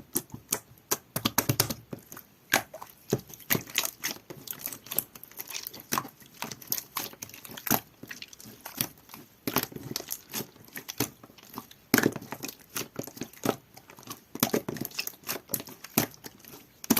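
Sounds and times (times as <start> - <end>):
slime squishing by hand: 0.0 - 16.9.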